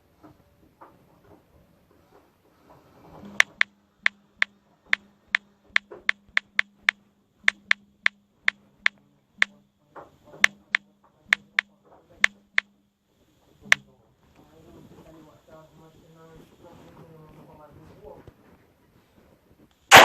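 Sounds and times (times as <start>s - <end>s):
sharp loud clicks: 3.4s - 9.6s, 10.4s - 12.7s.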